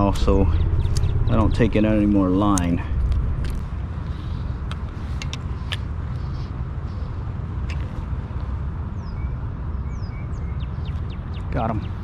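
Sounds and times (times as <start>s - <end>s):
bird chirps: 0.0s - 1.6s, 8.9s - 12.0s
low outdoor rumble: 0.0s - 12.0s.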